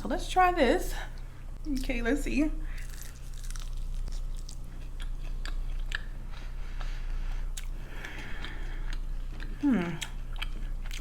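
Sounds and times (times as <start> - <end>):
chewing and biting: 2.8 - 11.0.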